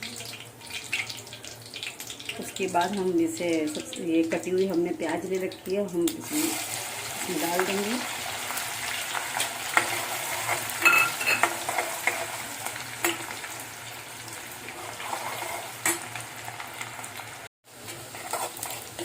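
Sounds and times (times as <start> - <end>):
onion sizzling in oil: 0.0 - 19.0
spoon scraping a pan: 9.1 - 13.5, 14.7 - 17.1, 17.8 - 19.0.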